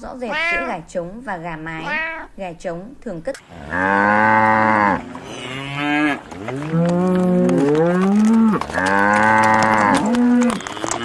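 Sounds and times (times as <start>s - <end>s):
cattle mooing: 3.5s - 11.0s.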